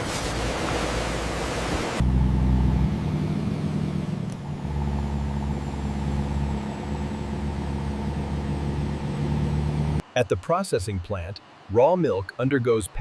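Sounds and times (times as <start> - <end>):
low engine rumble: 0.0 - 10.0.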